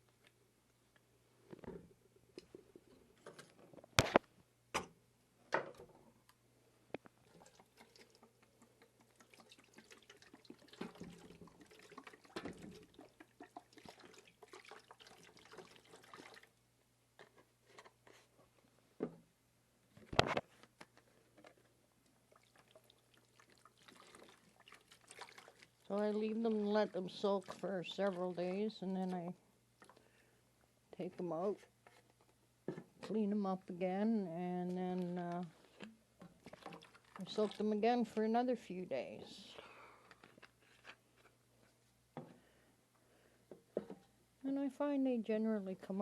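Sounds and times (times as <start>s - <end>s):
liquid trickling pour: 7.2s - 16.6s, 22.3s - 28.4s, 36.4s - 37.8s.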